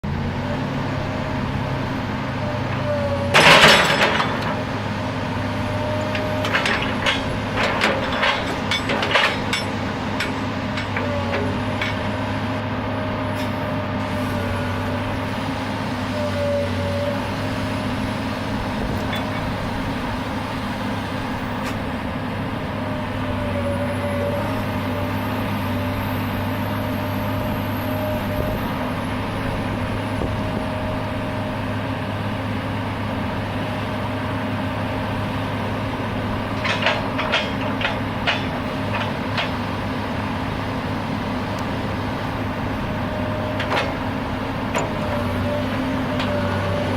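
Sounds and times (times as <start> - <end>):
excavator diesel engine running: 0.0 - 46.9
sharp metallic clanks: 3.3 - 4.6, 6.0 - 12.2, 36.5 - 39.6.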